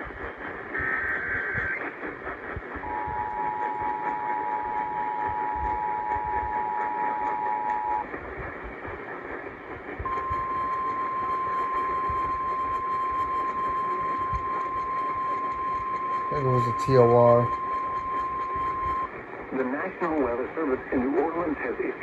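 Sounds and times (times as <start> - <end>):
radio hiss: 0.0 - 22.0
two-tone attention signal: 2.8 - 8.1, 10.1 - 19.1.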